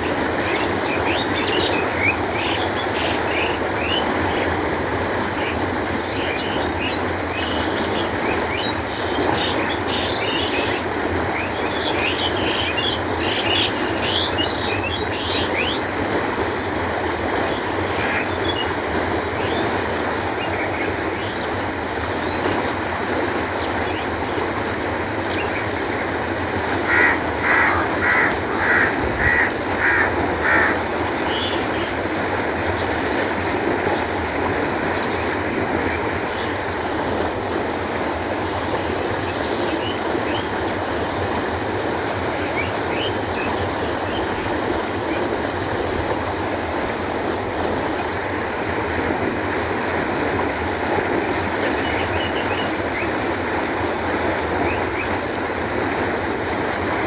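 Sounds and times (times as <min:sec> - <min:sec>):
water flowing: 0:00.0 - 0:57.0
loud bird calls: 0:26.8 - 0:32.0.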